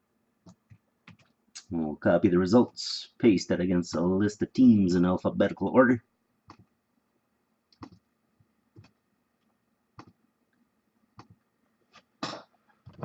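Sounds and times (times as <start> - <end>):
mouse and keyboard clicks: 6.5 - 6.7, 7.7 - 8.0, 10.0 - 10.2, 11.2 - 11.4.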